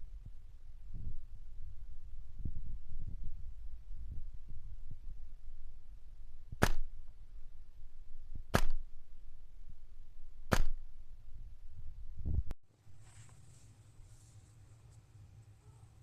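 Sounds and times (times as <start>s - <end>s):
steady low rumble: 0.0s - 16.0s
airsoft gun shots: 6.6s - 6.9s, 8.5s - 8.9s, 10.5s - 10.8s.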